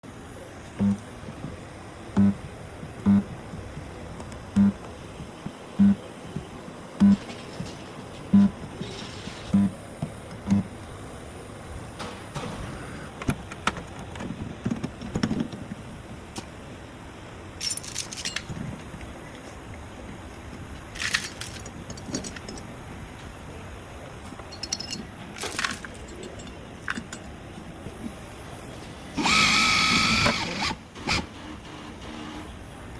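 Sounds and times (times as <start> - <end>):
metal tools clinking and scraping: 17.6 - 18.6, 21.0 - 22.7, 24.4 - 27.3.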